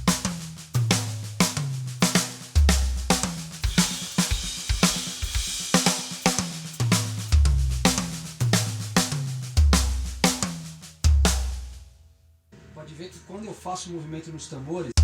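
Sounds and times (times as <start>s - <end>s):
snare and tom strokes: 0.0s - 11.8s.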